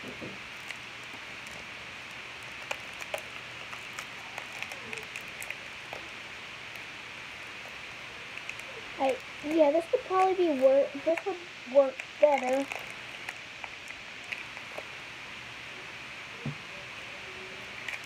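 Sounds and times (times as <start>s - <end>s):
background hiss: 0.0s - 18.0s.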